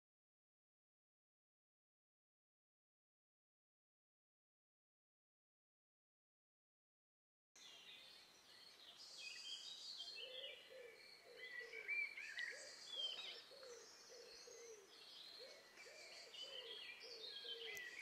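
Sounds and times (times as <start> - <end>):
birds chirping and singing: 7.6 - 18.0
low repeated bird call: 7.6 - 18.0.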